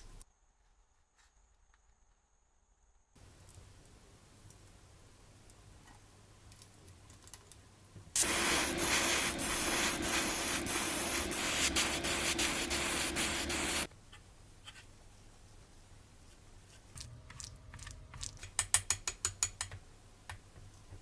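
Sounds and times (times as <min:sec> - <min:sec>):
small power tool running: 0:08.2 - 0:13.9.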